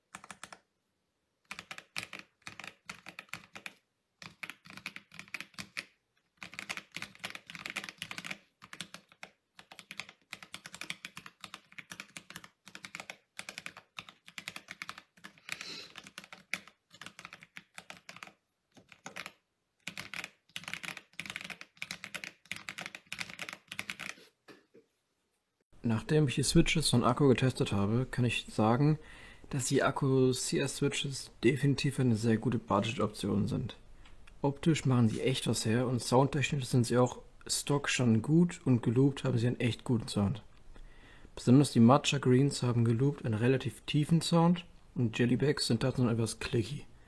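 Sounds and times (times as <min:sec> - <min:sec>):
typing on mechanical keyboard: 0:00.0 - 0:00.6, 0:01.4 - 0:24.2.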